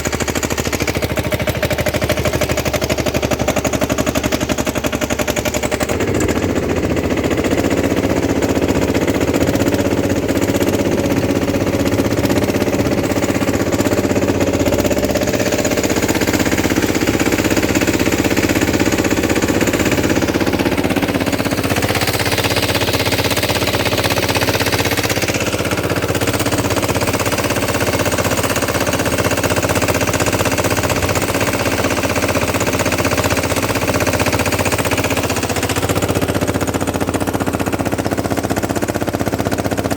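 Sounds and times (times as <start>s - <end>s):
diesel tractor engine chugging: 0.0s - 39.9s.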